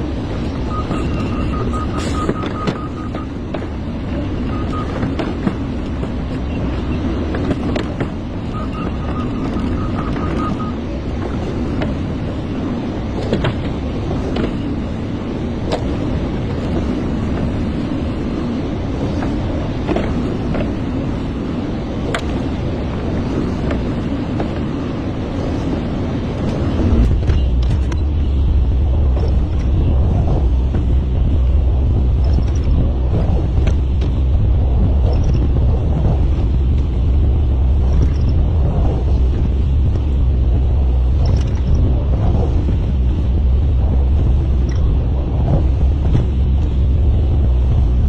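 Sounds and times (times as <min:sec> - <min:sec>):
excavator diesel engine running: 0:00.0 - 0:48.0.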